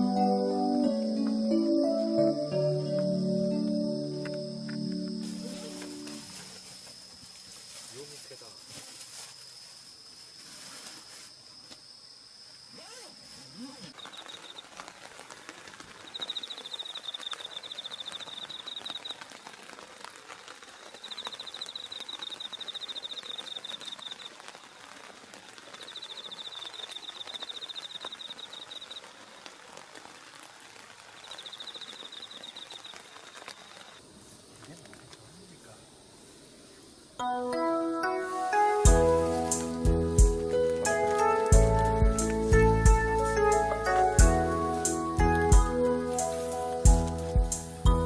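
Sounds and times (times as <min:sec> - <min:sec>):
insect trilling: 0:03.7 - 0:19.5, 0:20.6 - 0:24.8, 0:25.5 - 0:29.4, 0:31.1 - 0:34.0
faint crackles: 0:05.0 - 0:11.9, 0:12.6 - 0:37.0.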